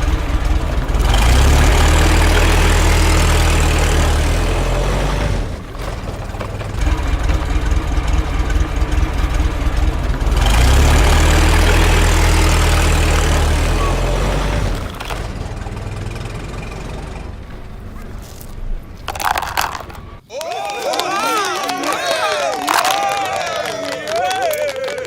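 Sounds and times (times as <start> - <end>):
heavy engine droning: 0.0 - 20.3.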